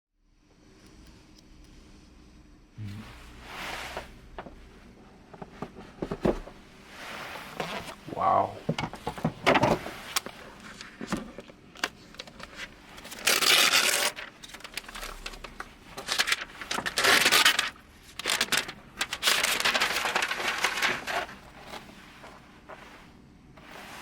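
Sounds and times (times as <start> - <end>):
packaging rustling and scraping: 5.3 - 24.0.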